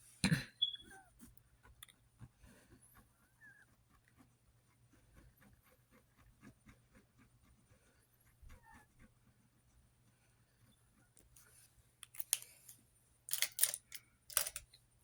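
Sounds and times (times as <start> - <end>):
faint high chirps: 0.5 - 1.0
faint small clicks and scratches: 0.6 - 15.0.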